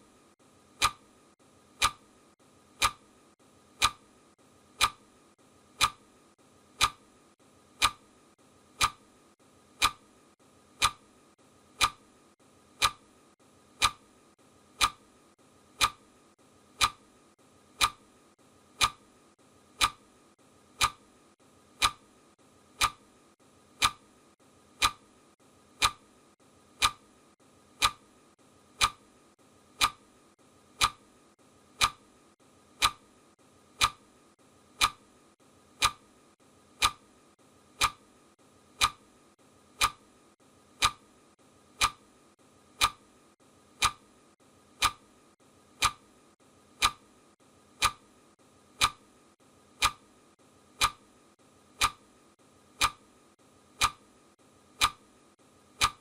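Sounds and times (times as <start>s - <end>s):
clock ticking: 0.7s - 3.1s, 3.7s - 4.1s, 4.7s - 5.1s, 5.7s - 6.1s, 6.7s - 7.1s, 7.7s - 9.1s, 9.7s - 10.1s, 10.7s - 11.1s, 11.7s - 12.1s, 12.7s - 15.1s, 15.7s - 16.1s, 16.7s - 17.1s, 17.7s - 18.1s, 18.7s - 19.1s, 19.7s - 20.1s, 20.7s - 21.1s, 21.7s - 22.1s, 22.7s - 23.1s, 23.7s - 24.1s, 24.7s - 26.1s, 26.7s - 27.1s, 27.7s - 28.1s, 28.8s - 29.1s, 29.7s - 30.1s, 30.8s - 31.1s, 31.7s - 32.1s, 32.8s - 34.1s, 34.7s - 35.1s, 35.8s - 36.2s, 36.8s - 37.1s, 37.7s - 38.1s, 38.7s - 39.1s, 39.7s - 40.1s, 40.8s - 41.1s, 41.7s - 42.1s, 42.7s - 43.1s, 43.8s - 44.1s, 44.8s - 45.1s, 45.8s - 46.1s, 46.8s - 47.1s, 47.8s - 48.1s, 48.8s - 49.1s, 49.8s - 50.1s, 50.8s - 51.1s, 51.8s - 52.1s, 52.8s - 53.1s, 53.8s - 54.1s, 54.8s - 55.1s, 55.8s - 56.0s.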